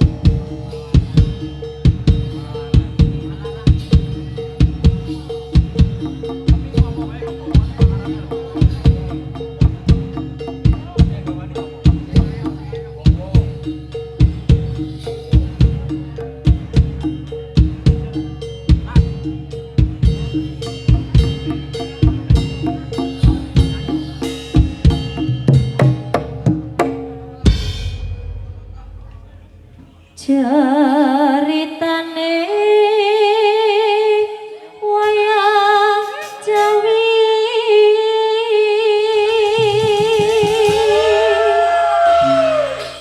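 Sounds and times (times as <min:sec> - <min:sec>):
gamelan drumming: 0:00.0 - 0:30.4, 0:35.0 - 0:37.8, 0:38.8 - 0:43.0
person singing with vibrato: 0:30.1 - 0:43.0.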